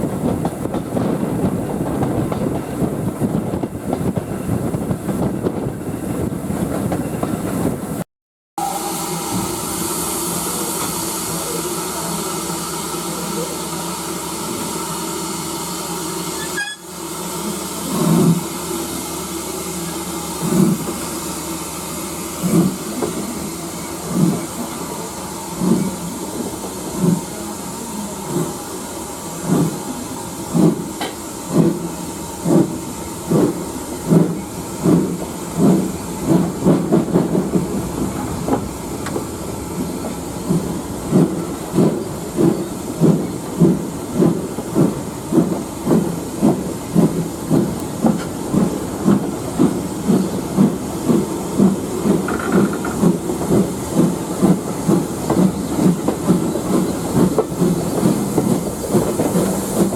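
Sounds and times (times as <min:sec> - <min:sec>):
steam locomotive hissing: 0:08.6 - 0:59.9
locomotive exhaust chuffs: 0:29.4 - 0:59.9.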